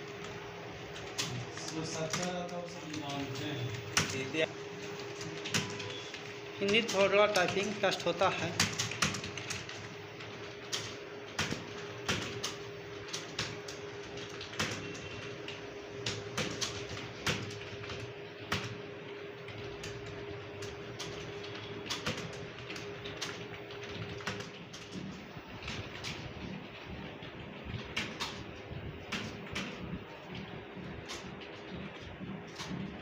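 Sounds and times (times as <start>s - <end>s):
keyboard typing clicks: 0.0s - 18.8s, 19.4s - 33.0s.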